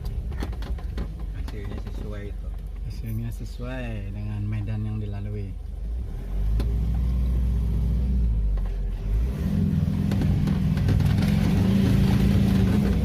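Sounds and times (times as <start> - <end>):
vehicle engine revving: 5.8 - 13.0.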